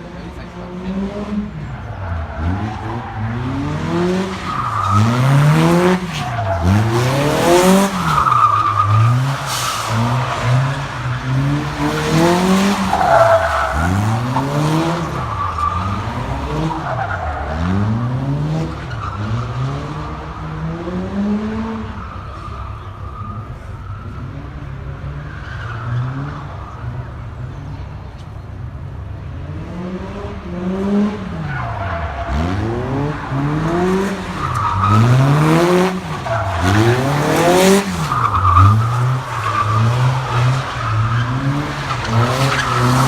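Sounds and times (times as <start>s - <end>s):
car engine revving: 0.0s - 28.2s, 28.8s - 43.0s
tyres squealing: 31.5s - 43.0s.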